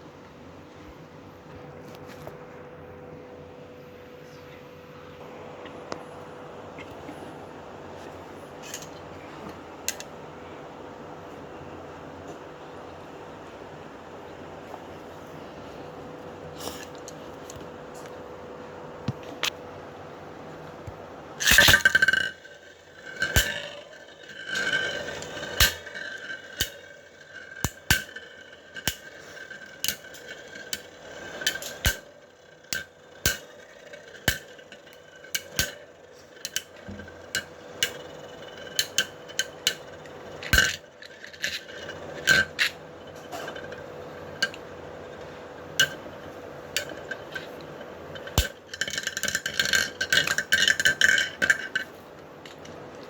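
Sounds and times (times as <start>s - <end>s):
spinning tops whining: 20.4s - 52.8s
spinning tops clicking together: 21.4s - 42.8s.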